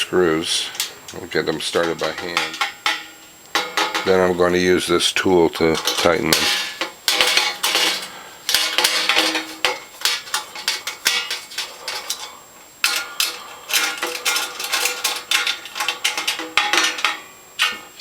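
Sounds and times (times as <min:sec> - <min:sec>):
metal tool clinking on nuts: 0:05.6 - 0:17.8.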